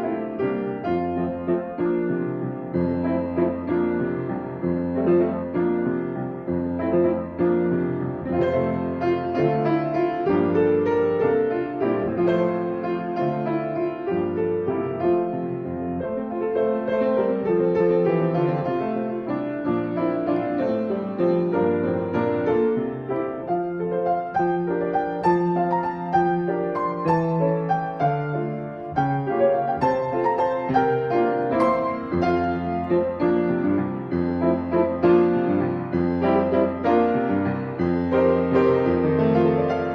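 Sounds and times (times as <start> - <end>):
piano piece: 0.0 - 39.9.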